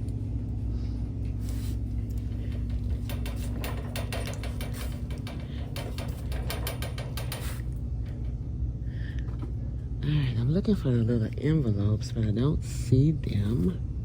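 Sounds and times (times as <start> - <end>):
low room hum: 0.0 - 14.0
clicks and rustles of handling: 1.2 - 8.3.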